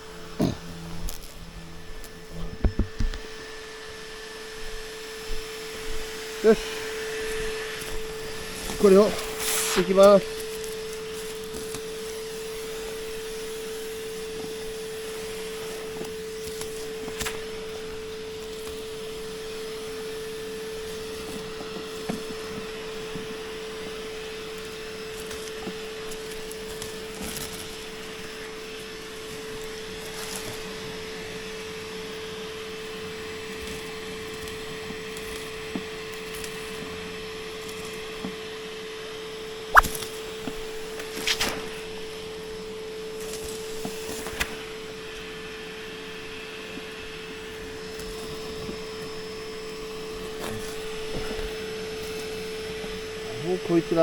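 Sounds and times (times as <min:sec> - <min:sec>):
faint hiss: 0:05.4 - 0:13.8.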